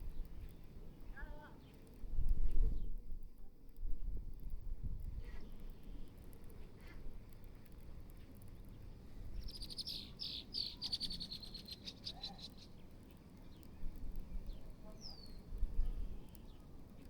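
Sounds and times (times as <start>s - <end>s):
songbird trilling: 9.4s - 12.8s, 14.9s - 16.6s.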